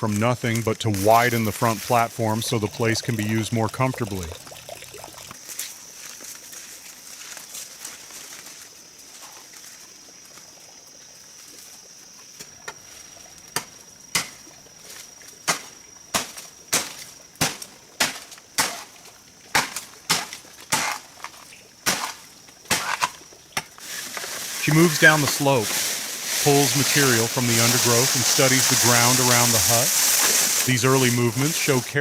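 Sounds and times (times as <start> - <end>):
blade chopping bamboo: 15.5 - 18.9, 19.5 - 21.1, 21.8 - 23.7.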